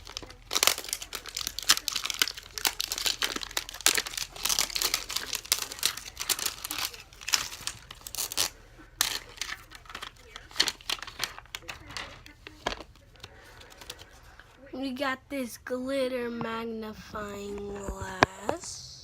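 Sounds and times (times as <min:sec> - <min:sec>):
wrapping crinkling and tearing: 0:00.0 - 0:14.6.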